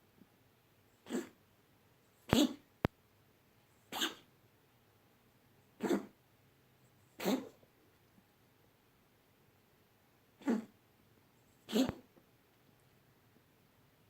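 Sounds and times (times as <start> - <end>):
pet coughing: 1.0 - 1.4, 2.3 - 2.6, 3.9 - 4.3, 5.8 - 6.2, 7.2 - 7.6, 10.4 - 10.8, 11.6 - 12.1.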